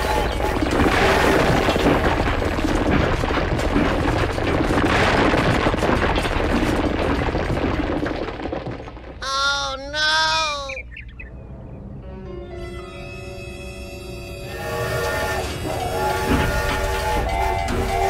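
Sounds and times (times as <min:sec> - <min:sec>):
booming crash with rattling: 0:00.0 - 0:09.2, 0:14.7 - 0:18.0.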